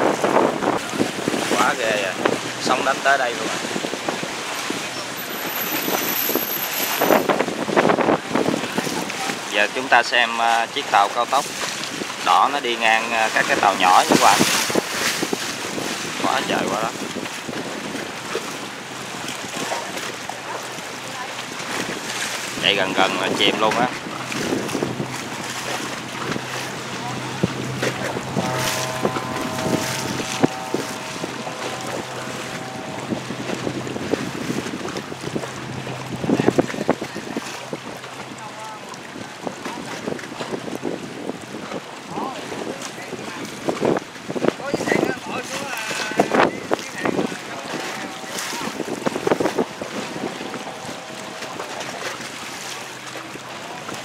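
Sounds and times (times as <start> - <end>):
wind buffeting microphone: 0.0 - 9.8, 10.8 - 54.0
boat engine running: 0.0 - 54.0
water slapping against hull: 0.0 - 54.0
wind rushing: 23.9 - 37.5
steady high tone: 25.9 - 36.6, 47.9 - 52.9.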